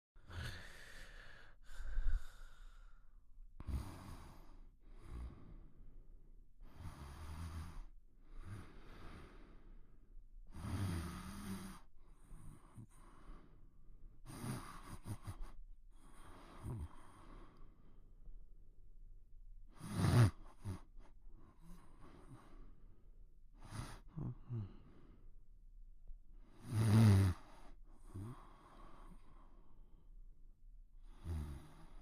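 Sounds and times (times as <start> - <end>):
sleeper breathing heavily: 0.2 - 6.0, 6.6 - 18.0, 19.7 - 25.3, 26.5 - 30.1
low buzzing snore: 3.6 - 6.0, 6.6 - 13.6, 14.2 - 17.9, 19.7 - 22.9, 23.5 - 25.2, 26.4 - 30.0, 31.0 - 32.0.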